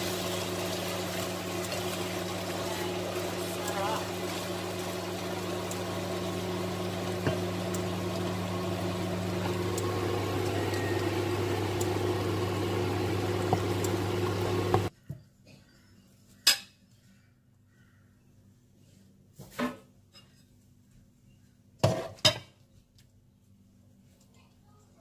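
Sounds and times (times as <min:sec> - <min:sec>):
kitchen appliance motor humming: 0:00.0 - 0:14.9.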